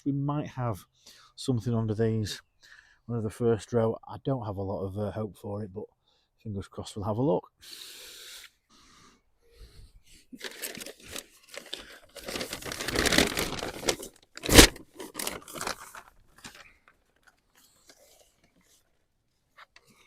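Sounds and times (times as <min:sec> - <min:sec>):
foliage rustling and tearing: 0:10.4 - 0:16.4
roots ripping out of soil: 0:10.4 - 0:16.8.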